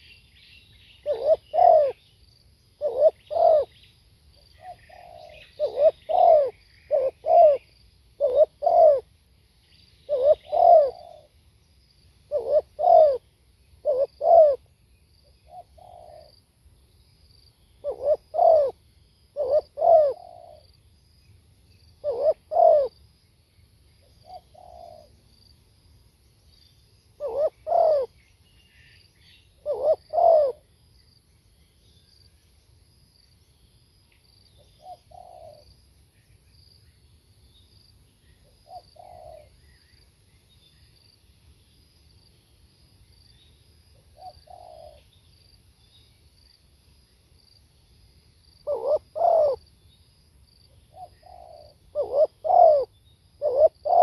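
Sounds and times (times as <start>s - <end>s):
high insect trill: 0.0s - 54.0s
dove cooing: 1.0s - 2.0s, 2.8s - 3.8s, 4.6s - 9.1s, 10.1s - 11.3s, 12.3s - 13.2s, 13.8s - 14.7s, 15.4s - 16.3s, 17.8s - 18.8s, 19.4s - 20.7s, 22.0s - 23.0s, 24.2s - 25.2s, 27.2s - 28.1s, 29.6s - 30.6s, 34.8s - 35.7s, 38.6s - 39.6s, 44.1s - 45.0s, 48.6s - 49.6s, 50.9s - 54.0s.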